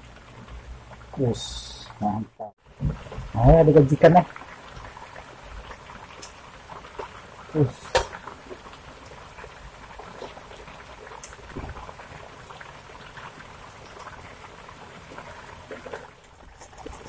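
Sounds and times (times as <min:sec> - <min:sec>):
rain hissing: 0:00.0 - 0:17.0
raindrop ticks: 0:02.8 - 0:17.0.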